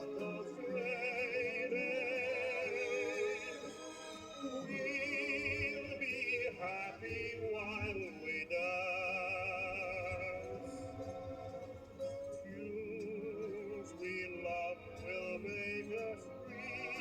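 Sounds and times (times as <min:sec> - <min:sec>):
instrumental accompaniment: 0:00.0 - 0:17.0
operatic singer with vibrato: 0:00.0 - 0:17.0
vinyl record ticks: 0:04.9 - 0:17.0.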